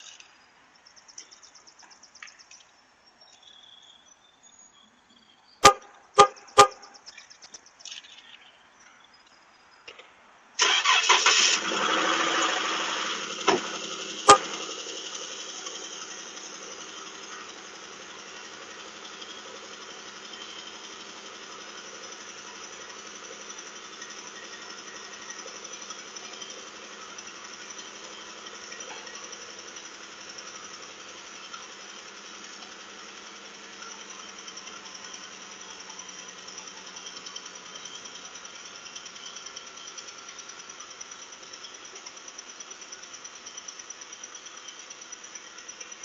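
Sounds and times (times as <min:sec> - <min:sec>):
car horn chirps: 0:05.6 - 0:07.0, 0:14.2 - 0:14.8
engine ticking: 0:05.6 - 0:08.4, 0:10.6 - 0:46.0
car engine starting and idling: 0:10.5 - 0:46.0.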